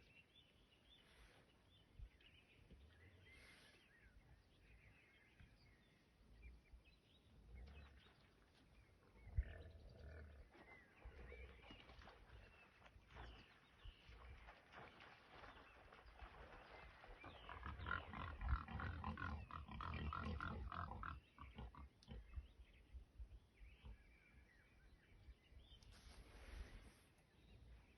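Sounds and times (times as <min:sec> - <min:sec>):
wild boar grunting: 0:17.4 - 0:22.4.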